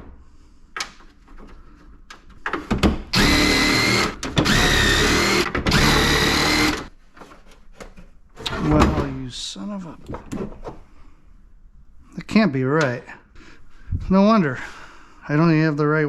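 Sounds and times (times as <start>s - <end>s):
power drill whine: 3.1s - 6.9s.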